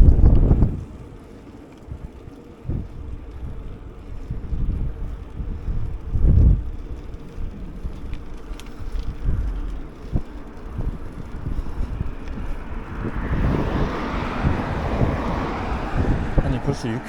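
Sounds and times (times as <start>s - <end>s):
wind buffeting microphone: 0.0s - 17.0s
loud rushing noise: 9.1s - 17.0s.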